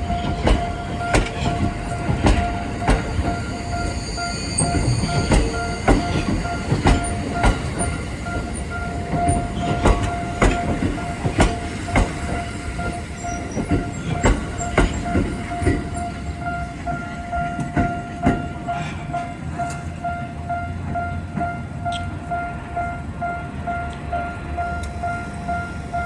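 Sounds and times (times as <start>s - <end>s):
train wheels clacking over rail joints: 0.0s - 18.9s.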